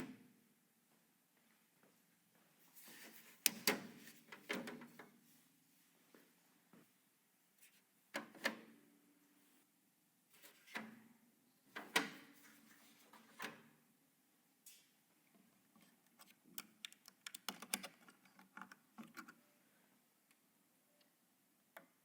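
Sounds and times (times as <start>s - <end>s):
computer parts clicking and knocking: 3.4s - 5.1s, 16.2s - 19.3s.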